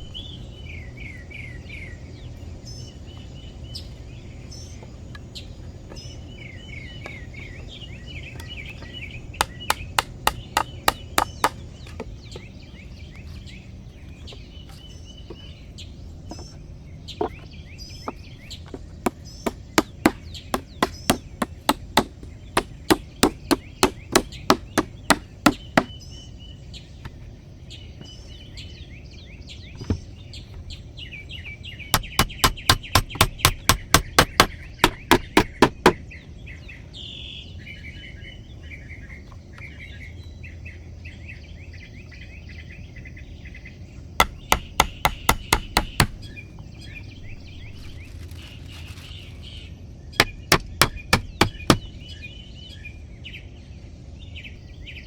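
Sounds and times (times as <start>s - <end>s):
birds singing: 0.0s - 55.0s
tool striking wood: 8.4s - 12.1s, 18.1s - 26.0s, 31.9s - 36.0s, 44.2s - 46.3s, 50.2s - 52.0s.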